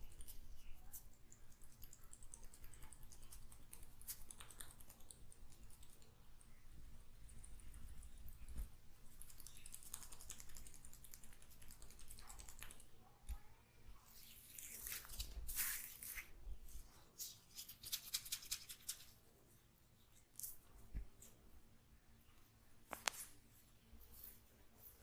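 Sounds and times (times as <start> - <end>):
hands rubbing oiled hair: 14.1 - 16.4, 17.1 - 19.2.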